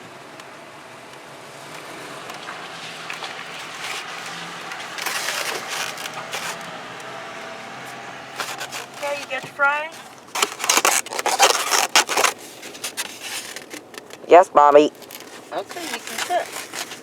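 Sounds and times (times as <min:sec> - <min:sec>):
car interior noise: 0:00.0 - 0:11.2
paper bag crinkling: 0:02.8 - 0:06.8, 0:07.7 - 0:14.3, 0:14.9 - 0:17.0.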